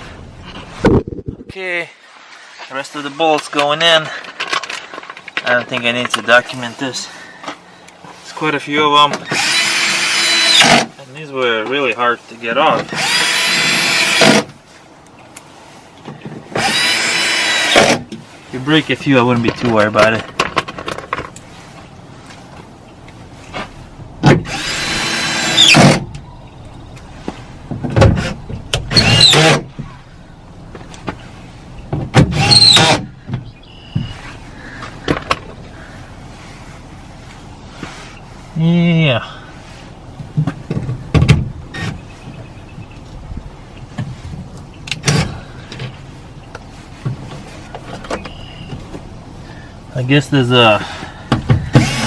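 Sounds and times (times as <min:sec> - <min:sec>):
cordless drill driving bolts: 0:09.2 - 0:10.9, 0:12.8 - 0:14.5, 0:16.5 - 0:18.1, 0:24.2 - 0:26.2, 0:28.1 - 0:29.7, 0:32.2 - 0:33.1, 0:51.6 - 0:52.0
car door parts knocking: 0:40.2 - 0:41.6, 0:51.3 - 0:51.8.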